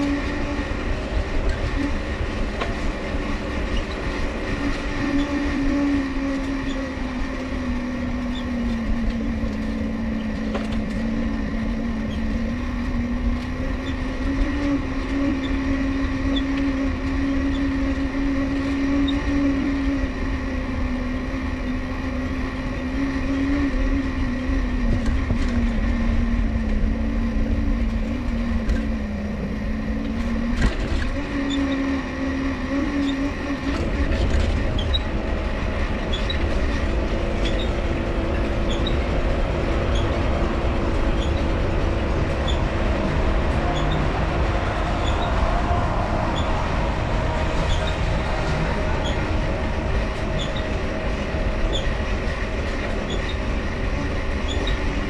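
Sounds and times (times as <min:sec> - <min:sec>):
bicycle dynamo whining: 0:32.8 - 0:55.0
low rumble: 0:33.5 - 0:55.0.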